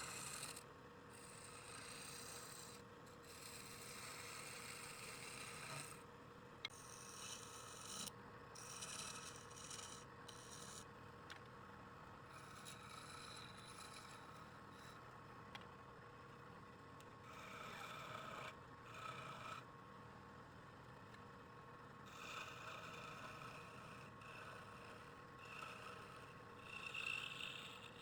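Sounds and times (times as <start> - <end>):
tool scraping wood on lathe: 1.2 - 6.0, 12.4 - 14.4, 26.8 - 28.0.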